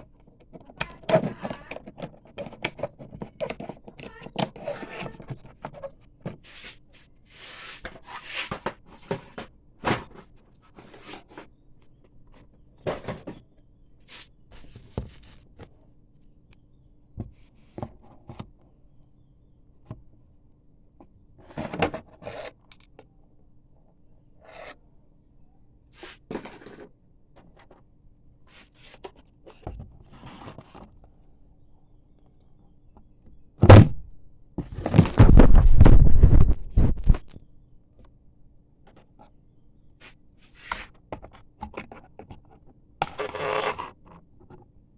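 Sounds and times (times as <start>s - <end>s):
clicks knocks and scrapes: 0.5s - 6.8s, 34.6s - 37.4s.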